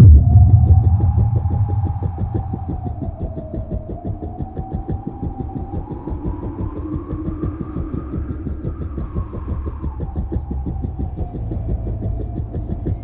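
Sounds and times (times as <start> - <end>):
whine shifting in pitch: 0.0 - 4.0
fast steady pulsing: 0.0 - 13.0.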